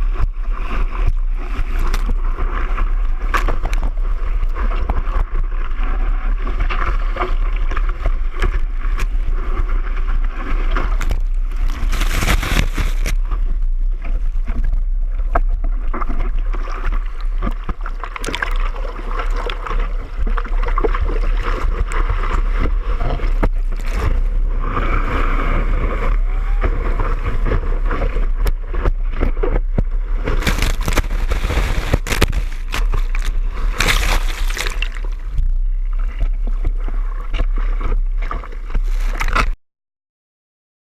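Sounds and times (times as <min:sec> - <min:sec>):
rushing water: 0:10.1 - 0:13.3, 0:16.5 - 0:28.4, 0:30.1 - 0:36.7
breaking surf: 0:10.4 - 0:13.2, 0:30.1 - 0:35.6.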